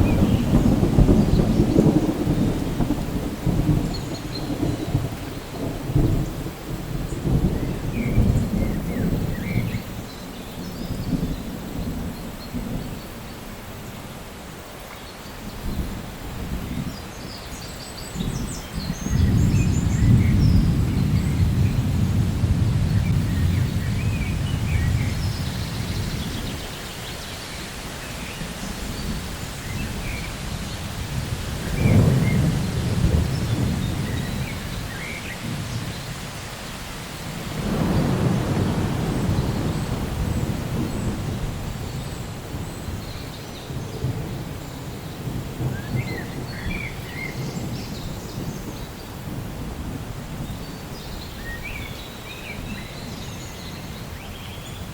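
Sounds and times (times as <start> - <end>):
sharp thunder crack: 0.0 - 9.8, 18.2 - 26.8, 28.3 - 36.1, 37.4 - 42.1
thunder rumbling: 0.0 - 13.2, 18.0 - 54.2
steady rain: 0.0 - 54.9.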